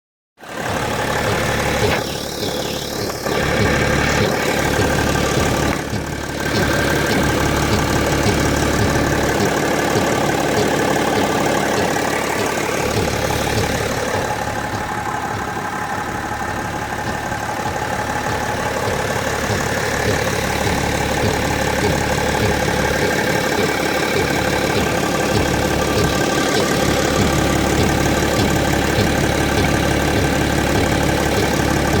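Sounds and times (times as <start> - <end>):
car engine idling: 0.4 - 32.0.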